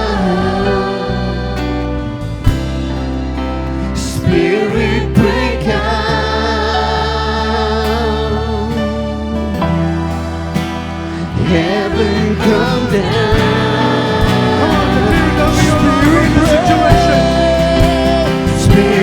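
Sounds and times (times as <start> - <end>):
held keyboard notes: 0.0 - 19.0
sung vocals: 0.0 - 19.0
worship band playing: 0.0 - 19.0
drums: 2.4 - 3.2, 13.3 - 19.0.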